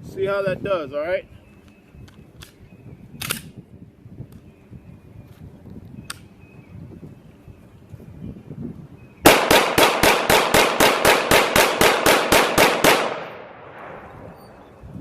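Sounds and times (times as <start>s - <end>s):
pistol rapid fire: 9.3s - 14.0s
gunshot echo: 9.3s - 14.3s.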